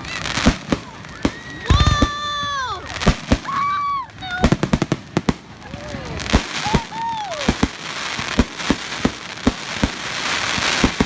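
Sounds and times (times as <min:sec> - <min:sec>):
crackling fireworks hiss: 0:00.0 - 0:11.0
fireworks bangs: 0:00.0 - 0:11.0.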